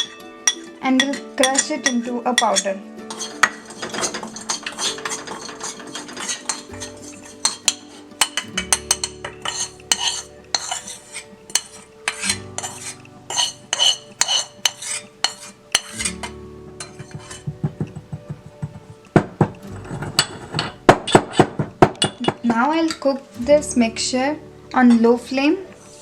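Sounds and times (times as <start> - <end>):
pestle crushing seeds in mortar: 3.1 - 22.6.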